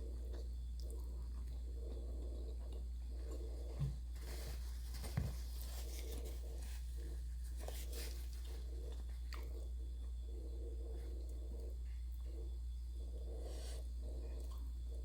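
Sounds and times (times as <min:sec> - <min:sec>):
chewing crunchy fried food: 0:00.0 - 0:04.2
steady low hum: 0:00.0 - 0:15.0.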